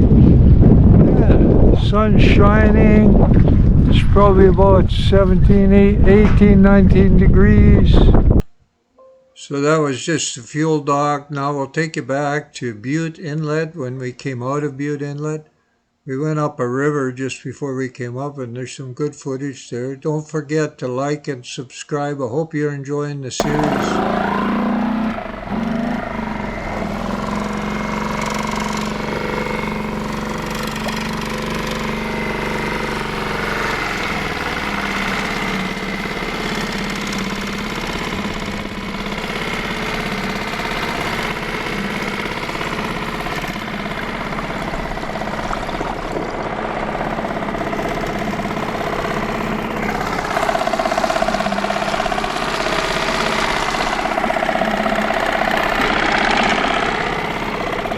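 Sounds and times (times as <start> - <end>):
boat motor running: 0.0 - 8.4, 23.4 - 57.9.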